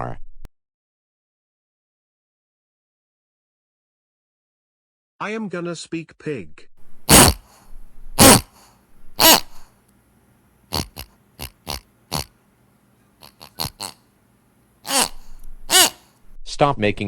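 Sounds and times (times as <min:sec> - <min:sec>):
pig grunting: 0:07.0 - 0:09.7, 0:10.7 - 0:12.3, 0:13.2 - 0:14.0, 0:14.9 - 0:16.1.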